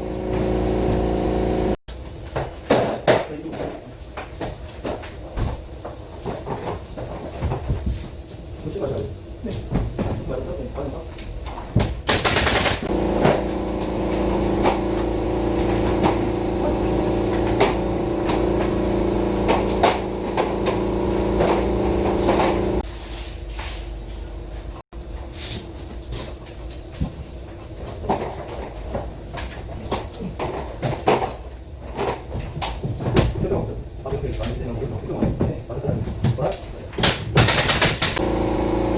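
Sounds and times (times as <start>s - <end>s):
machine humming: 0.0s - 1.8s, 12.8s - 22.8s, 38.2s - 38.9s
pneumatic nailer firing: 12.0s - 22.8s, 37.0s - 38.9s.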